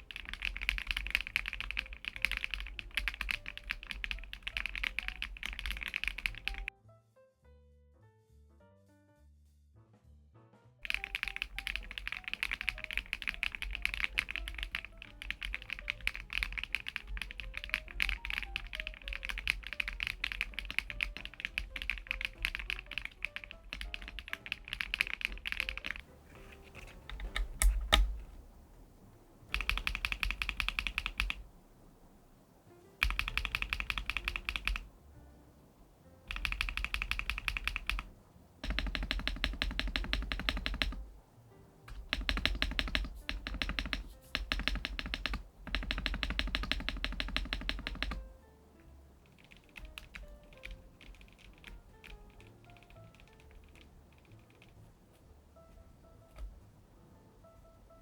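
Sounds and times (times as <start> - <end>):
mechanical keyboard key clicks: 0.0 - 6.7, 10.8 - 26.0, 26.6 - 28.4, 29.5 - 31.4, 33.0 - 34.9, 36.3 - 41.1, 41.9 - 48.3, 49.3 - 54.8
background music: 0.0 - 58.0.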